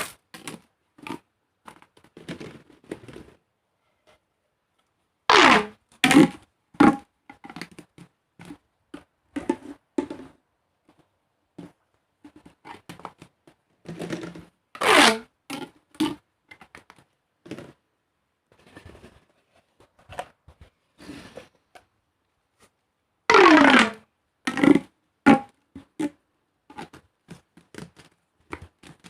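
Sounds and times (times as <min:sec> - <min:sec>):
plastic tubes crackling: 0:05.3 - 0:08.6, 0:13.9 - 0:17.8, 0:23.3 - 0:29.0.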